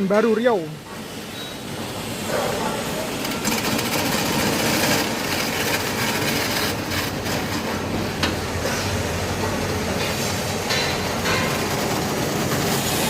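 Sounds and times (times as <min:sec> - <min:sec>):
peeling machine running: 0:03.1 - 0:13.0.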